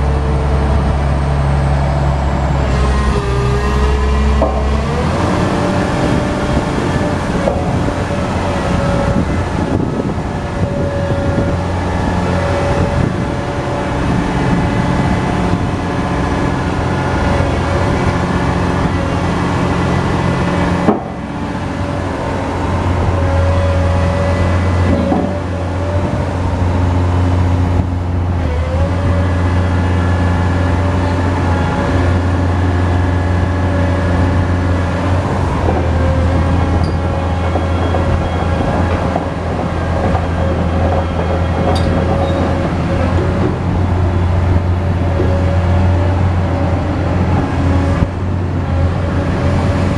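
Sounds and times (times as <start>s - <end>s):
excavator diesel engine: 0.0s - 49.9s
hydraulic whine: 0.0s - 49.9s.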